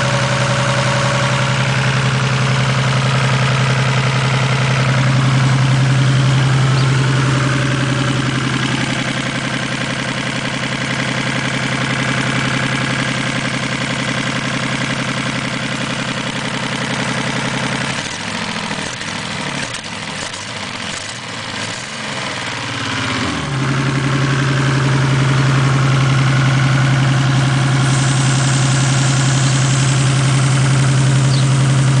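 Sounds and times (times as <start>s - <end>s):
car engine idling: 0.0s - 32.0s.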